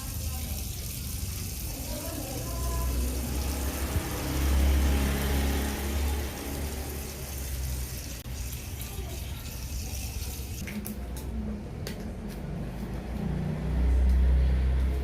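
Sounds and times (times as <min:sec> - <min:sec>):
water running from a tap: 0:00.0 - 0:10.7.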